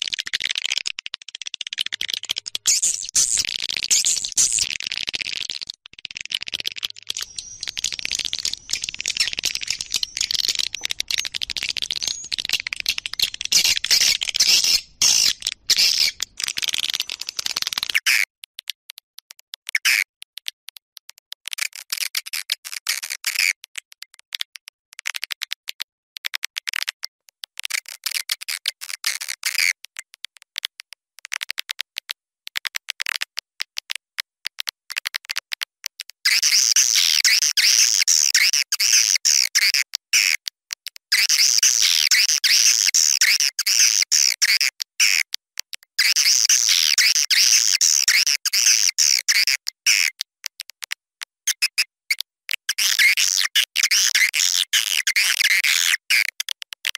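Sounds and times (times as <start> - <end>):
swiftlets chittering and twittering: 0.0 - 18.0.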